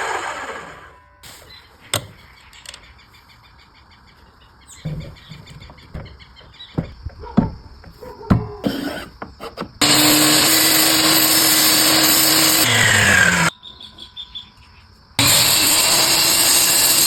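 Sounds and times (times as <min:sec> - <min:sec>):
power tool winding down: 0:00.0 - 0:01.0, 0:09.8 - 0:13.5, 0:15.2 - 0:17.0
wood knocking and thudding: 0:04.8 - 0:09.8
faint bird chirps: 0:13.5 - 0:15.0.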